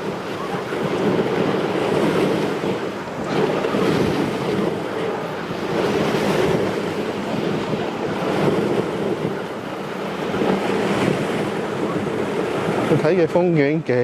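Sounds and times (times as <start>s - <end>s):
sled gliding over snow: 0.0s - 13.0s
wind buffeting microphone: 0.0s - 14.0s.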